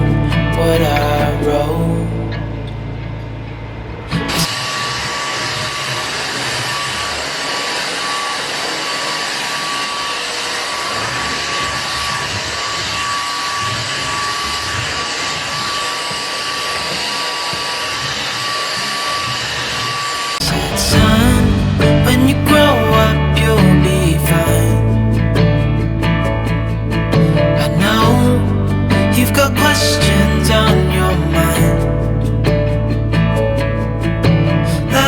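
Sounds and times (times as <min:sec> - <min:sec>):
appliance motor and fan whine: 0:01.2 - 0:20.4.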